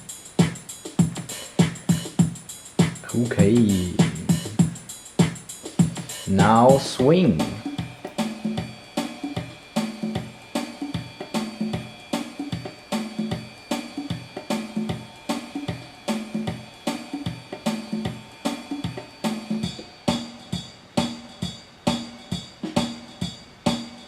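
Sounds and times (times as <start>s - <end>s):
electronic keyboard swing drum pattern: 0.0s - 24.0s
low bass notes: 3.1s - 4.8s.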